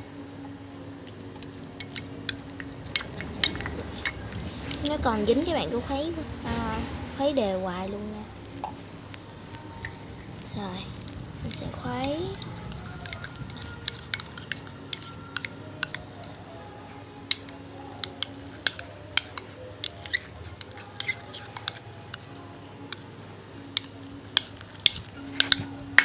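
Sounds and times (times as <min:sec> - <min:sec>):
stirrer knocking against bowl: 0:11.4 - 0:16.4.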